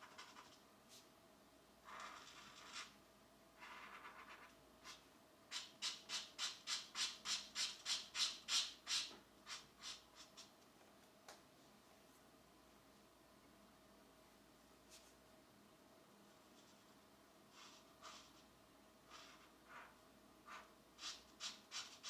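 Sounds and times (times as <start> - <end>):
coloured pencil scratching on paper: 0.0 - 0.6, 1.8 - 3.0, 3.6 - 10.5, 16.5 - 22.0.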